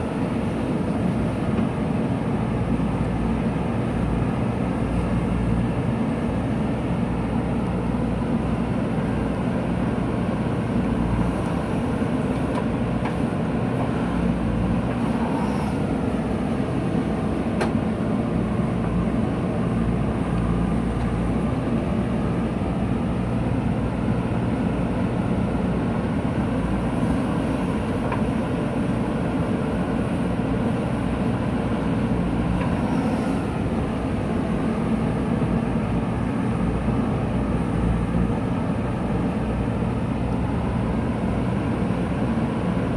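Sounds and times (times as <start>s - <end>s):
diesel engine running under load: 0.0s - 42.9s
backhoe digging soil: 11.0s - 16.8s, 32.0s - 34.2s.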